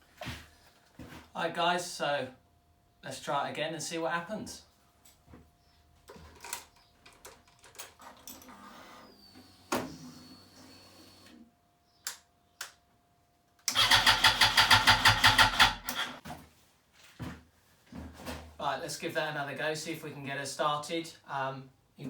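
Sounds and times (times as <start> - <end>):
motorcycle engine cranking: 13.7 - 16.2.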